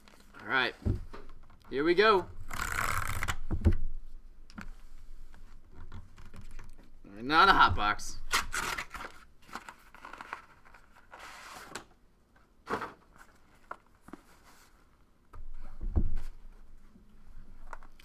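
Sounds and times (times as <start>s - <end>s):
packaging crinkling and tearing: 2.5s - 3.4s, 8.3s - 11.2s.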